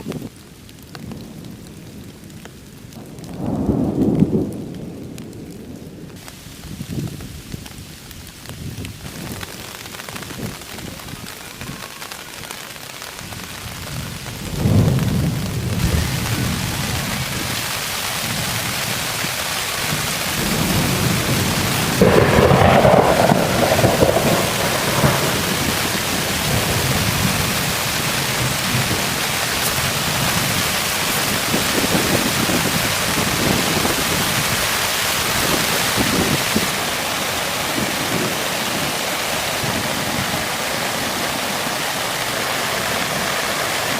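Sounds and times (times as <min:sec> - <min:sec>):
heavy rain: 0:00.0 - 0:43.9
rolling thunder: 0:01.0 - 0:06.2, 0:13.3 - 0:40.6.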